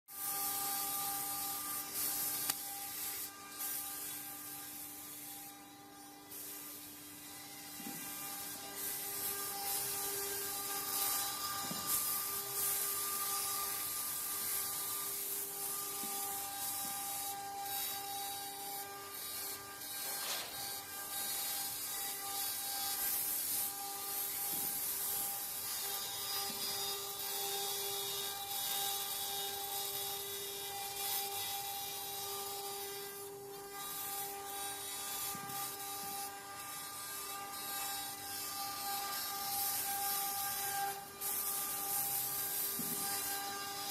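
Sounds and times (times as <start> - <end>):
bit cutting wood hiss: 0.1 - 43.9.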